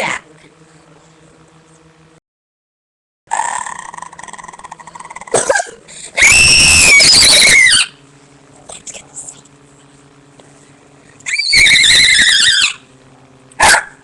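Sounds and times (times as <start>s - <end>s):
person making strained vocal noises: 3.3s - 5.9s
person screaming high-pitched: 6.2s - 7.9s.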